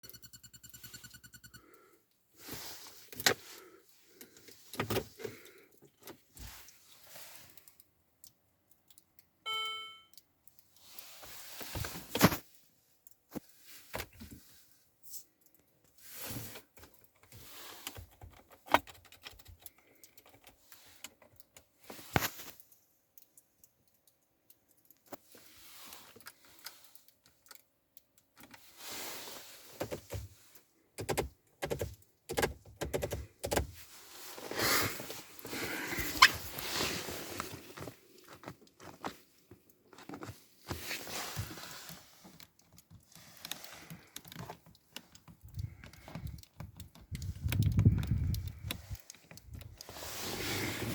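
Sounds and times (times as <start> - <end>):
dashboard electronic chime: 0.0 - 1.6, 9.5 - 10.2
key and switch clicks: 31.0 - 33.7.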